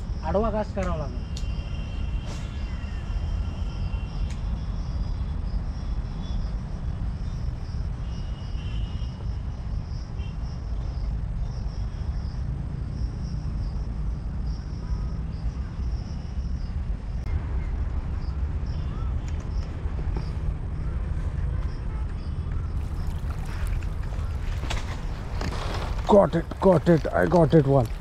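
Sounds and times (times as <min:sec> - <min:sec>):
insects trilling: 0:22.6 - 0:28.0.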